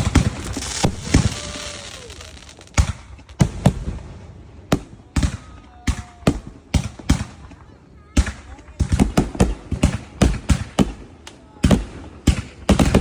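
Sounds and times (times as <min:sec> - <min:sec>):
firework hiss: 0:00.0 - 0:03.7
firework bangs: 0:00.0 - 0:13.0.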